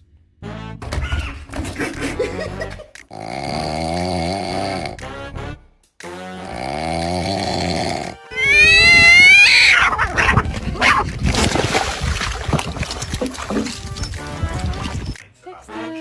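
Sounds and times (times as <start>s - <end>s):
animal calling: 7.8s - 11.2s.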